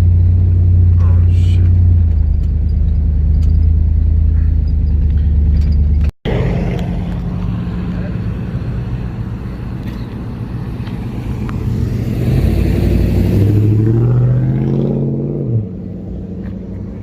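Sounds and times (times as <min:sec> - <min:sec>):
car engine running: 0:00.0 - 0:14.2
engine revving up: 0:06.3 - 0:08.6, 0:11.0 - 0:15.8.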